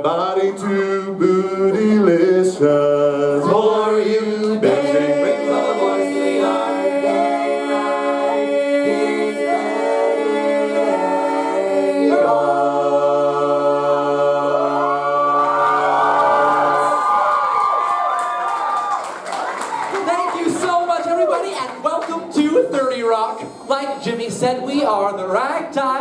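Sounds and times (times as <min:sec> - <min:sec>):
barbershop quartet singing: 0:00.0 - 0:17.3.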